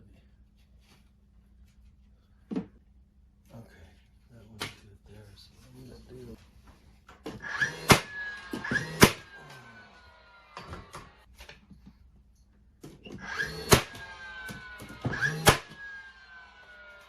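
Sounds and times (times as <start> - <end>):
brad nailer shots: 7.2 - 11.2, 12.9 - 17.0.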